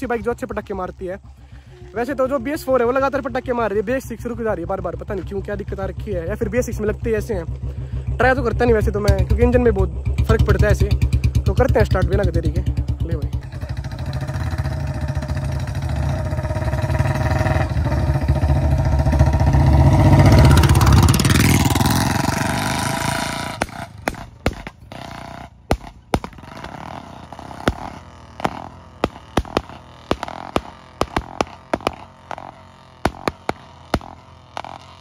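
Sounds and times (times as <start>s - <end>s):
motorcycle engines passing: 0.0s - 35.0s
exhaust pops: 8.4s - 35.0s.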